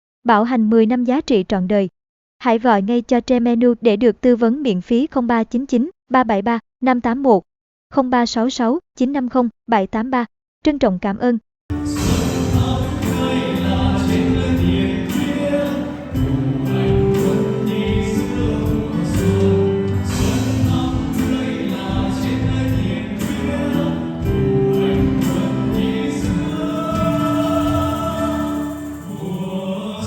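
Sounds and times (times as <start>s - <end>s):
steady beat: 11.7s - 29.0s
group singing in chorus: 11.7s - 30.0s.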